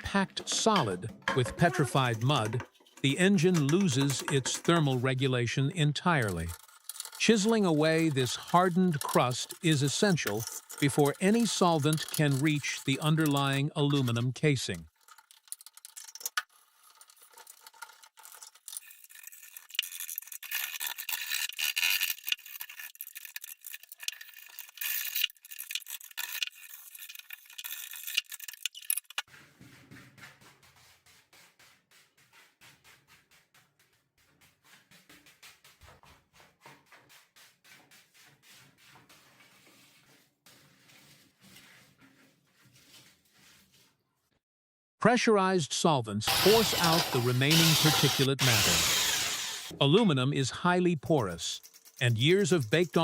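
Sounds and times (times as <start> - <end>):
chisel scraping dried mud: 0.3 - 14.2, 46.3 - 49.8, 51.6 - 53.0.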